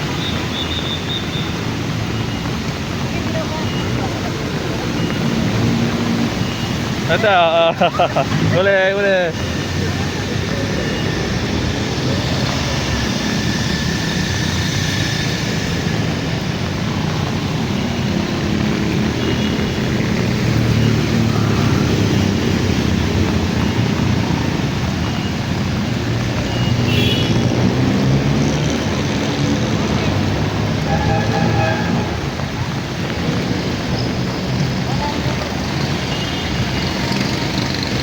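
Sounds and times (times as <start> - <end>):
steady traffic noise: 0.0 - 38.0
vehicle engines passing: 0.0 - 38.0.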